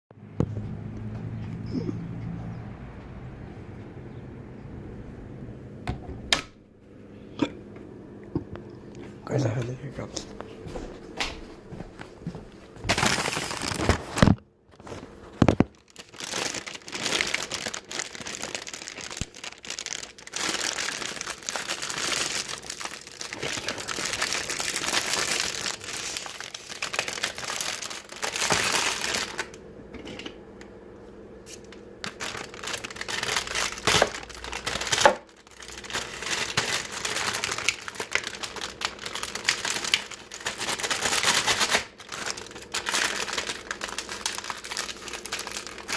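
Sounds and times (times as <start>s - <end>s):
crinkling and crackling handling: 12.6s - 30.4s, 31.4s - 45.9s.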